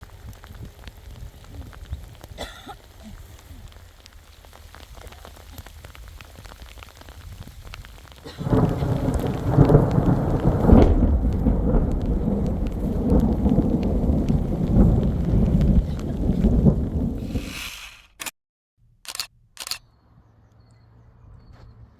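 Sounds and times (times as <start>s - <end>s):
rain falling: 0.0s - 17.5s
thunder rolling: 8.2s - 17.5s.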